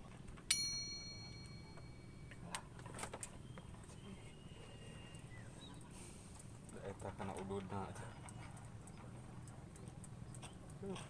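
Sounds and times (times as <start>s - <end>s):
metallic ping: 0.5s - 2.3s
faint clicks: 5.1s - 11.0s.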